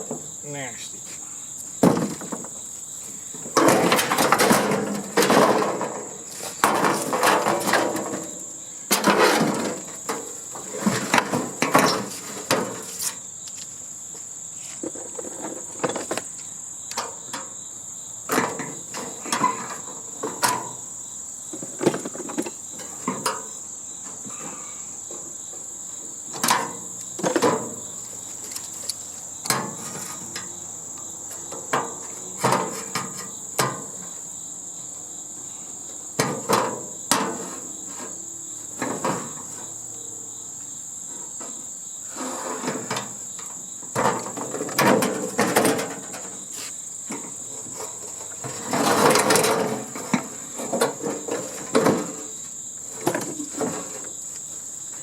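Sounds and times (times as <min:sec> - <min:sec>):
metal clanks and scraping from tools: 0:03.4 - 0:13.2, 0:18.3 - 0:20.8, 0:28.4 - 0:30.6, 0:31.3 - 0:34.0, 0:36.2 - 0:38.2, 0:41.2 - 0:54.1.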